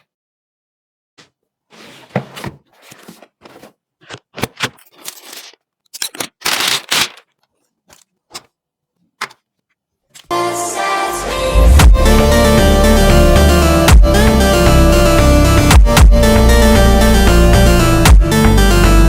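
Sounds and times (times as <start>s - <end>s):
scrapes and rustles of packaging: 1.7s - 8.6s.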